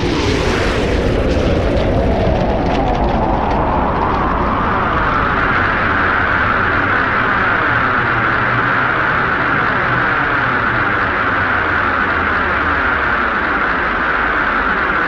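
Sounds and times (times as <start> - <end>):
rocket engine roaring: 0.0 - 15.0.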